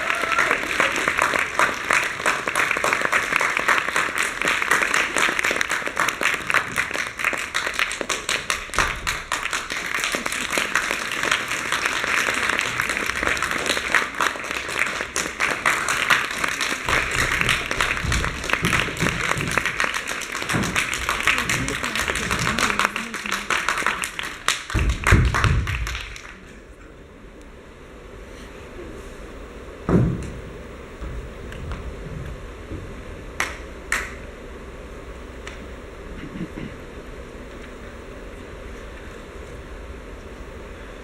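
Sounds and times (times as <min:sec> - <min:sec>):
audience applauding: 0:00.0 - 0:26.7, 0:33.4 - 0:34.3.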